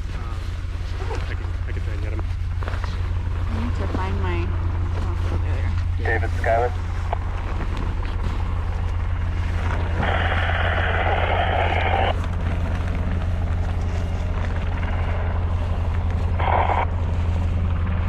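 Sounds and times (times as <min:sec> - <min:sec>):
helicopter drone: 0:00.0 - 0:18.0
radio static bursts: 0:06.0 - 0:07.3, 0:09.8 - 0:12.2, 0:16.3 - 0:17.0.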